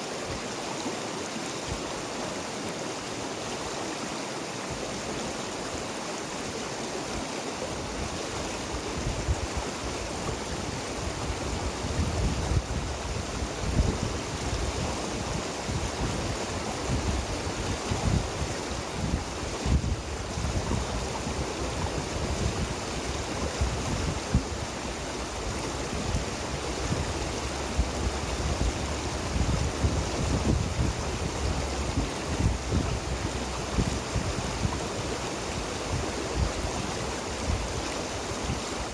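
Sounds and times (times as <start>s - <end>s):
river water rushing: 0.0s - 38.9s
wind buffeting microphone: 7.8s - 38.9s.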